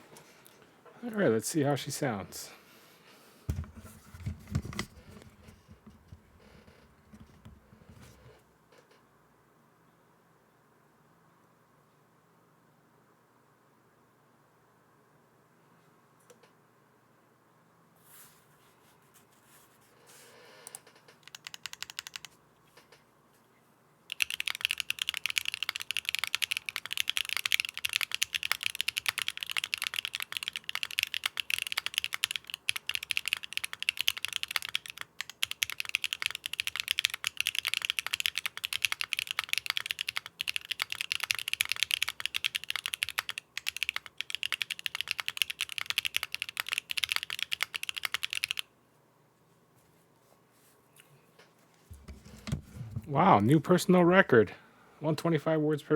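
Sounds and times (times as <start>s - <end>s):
mechanical keyboard typing: 20.7s - 22.4s, 24.1s - 48.7s.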